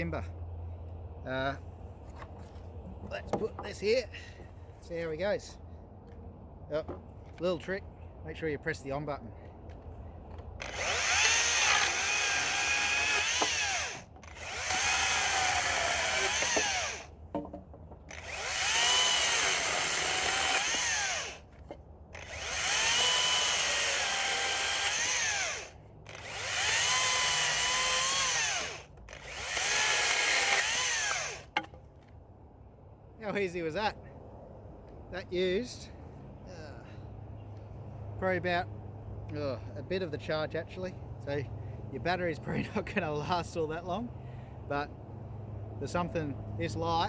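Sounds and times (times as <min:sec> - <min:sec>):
battery chainsaw cutting wood: 0:10.6 - 0:17.1, 0:18.1 - 0:21.5, 0:22.2 - 0:31.6
electric motor high whine: 0:18.1 - 0:21.4.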